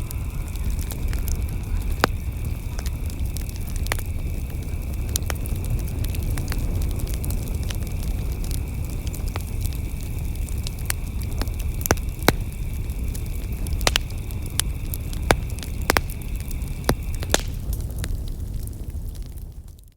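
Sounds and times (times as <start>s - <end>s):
burning wood crackling and popping: 0.0s - 19.9s
low rush of flame: 0.0s - 19.9s.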